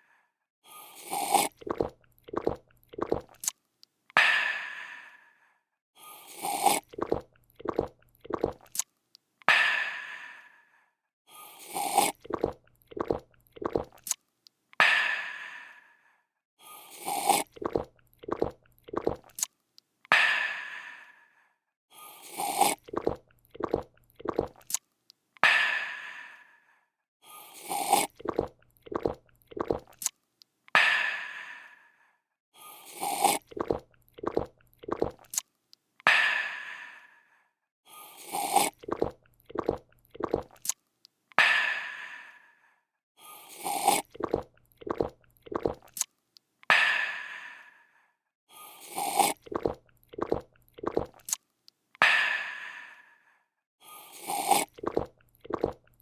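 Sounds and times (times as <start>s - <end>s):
person slurping: 0.7s - 3.5s, 6.1s - 8.8s, 11.4s - 14.2s, 16.7s - 19.5s, 22.0s - 24.8s, 27.4s - 30.1s, 32.7s - 35.4s, 38.0s - 40.8s, 43.3s - 46.1s, 48.7s - 51.4s, 53.9s - 56.0s
person gulping: 1.1s - 3.5s, 6.4s - 8.8s, 11.7s - 14.2s, 17.0s - 19.4s, 22.4s - 24.8s, 27.7s - 30.1s, 33.0s - 35.4s, 38.3s - 40.7s, 43.6s - 46.0s, 49.0s - 51.4s, 54.2s - 56.0s
satisfied aah exhale: 4.2s - 6.8s, 52.0s - 55.0s.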